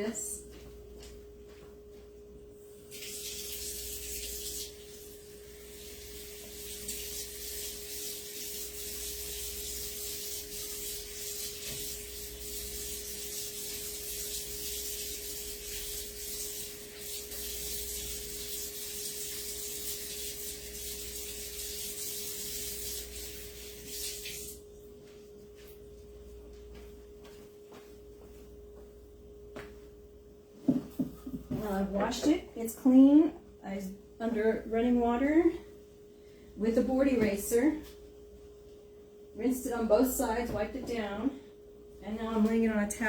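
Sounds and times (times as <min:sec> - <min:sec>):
tap water running: 0:02.8 - 0:24.7.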